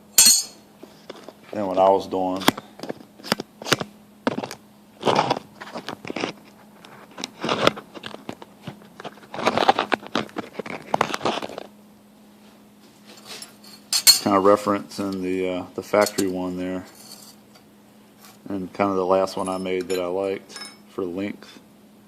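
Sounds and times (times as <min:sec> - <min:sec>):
faint hum: 0:00.0 - 0:22.0
metal parts clicking and clinking: 0:00.2 - 0:00.6, 0:13.4 - 0:14.3
scraping rustles: 0:02.4 - 0:11.7, 0:12.4 - 0:13.9, 0:16.8 - 0:17.5.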